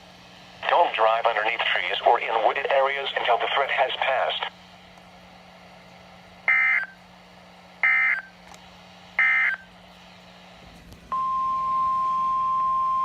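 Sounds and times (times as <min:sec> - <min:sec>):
steady warning alarm tone: 0:06.5 - 0:07.0, 0:07.8 - 0:08.3, 0:09.2 - 0:09.7, 0:11.1 - 0:13.0.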